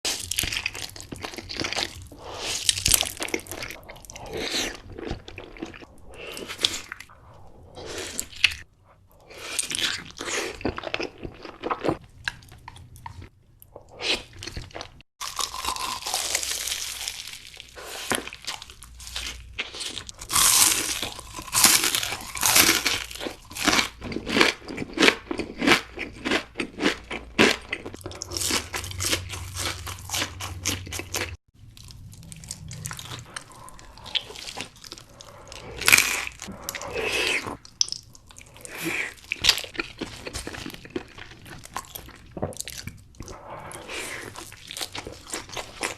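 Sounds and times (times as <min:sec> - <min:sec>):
crunchy food chewing: 0:14.0 - 0:45.9.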